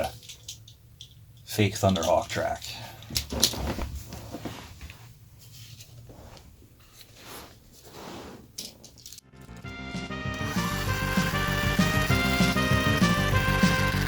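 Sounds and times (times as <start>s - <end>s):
handling clicks and rustles: 8.5s - 9.3s
background music: 9.2s - 14.0s.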